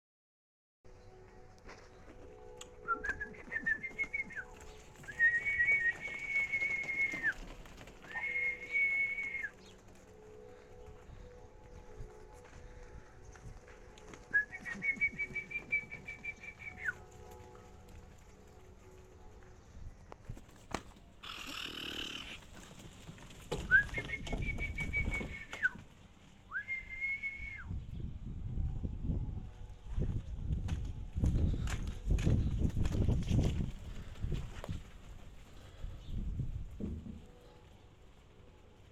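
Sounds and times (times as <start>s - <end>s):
long level whistles: 2.7s - 9.8s, 14.3s - 17.1s, 23.7s - 25.8s, 26.5s - 27.9s.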